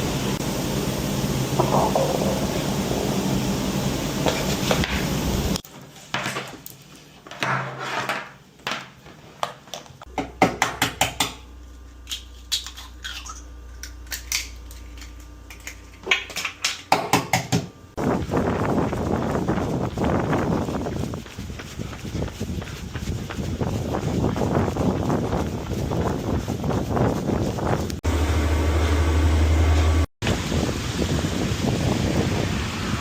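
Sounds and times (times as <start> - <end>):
steady low hum: 0.0 - 5.6, 17.7 - 30.1
dishes and utensils clinking: 1.6 - 2.7
steady rushing noise: 18.0 - 33.0.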